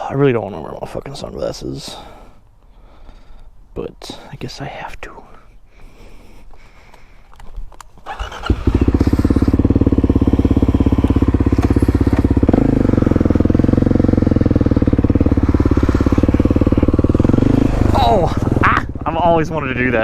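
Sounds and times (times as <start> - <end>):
motorcycle engine pulsing: 8.0 - 20.0.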